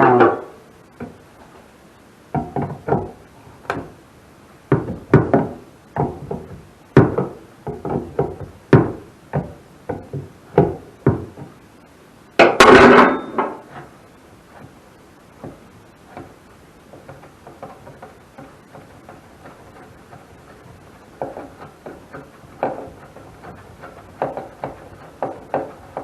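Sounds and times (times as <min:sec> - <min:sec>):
tools clattering: 0:12.4 - 0:13.7.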